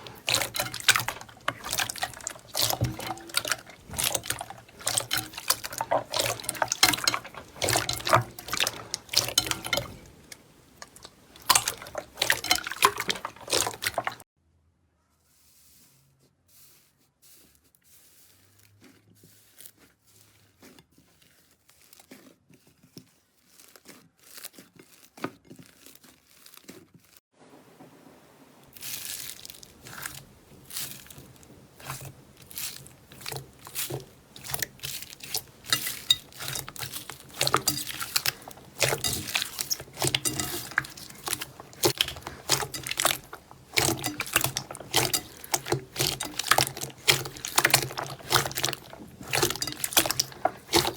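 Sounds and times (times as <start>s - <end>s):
slime crackling and popping: 28.7s - 50.9s.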